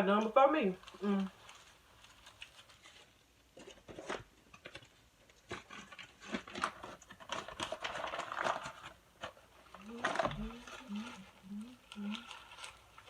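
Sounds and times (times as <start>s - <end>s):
person chewing food: 9.7s - 13.0s.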